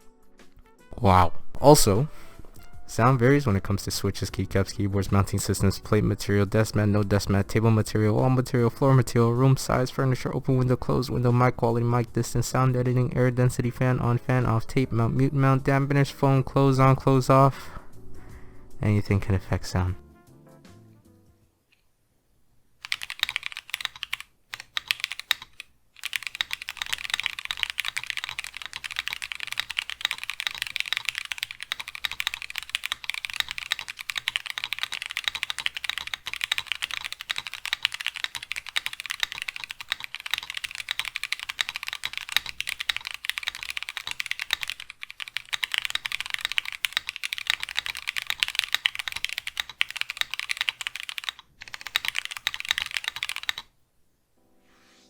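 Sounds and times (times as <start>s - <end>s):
mechanical keyboard typing: 22.8s - 53.7s.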